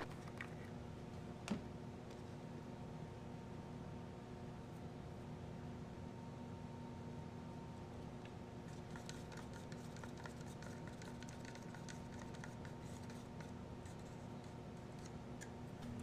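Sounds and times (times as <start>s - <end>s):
mixing stick scraping plastic cup: 8.6s - 15.5s.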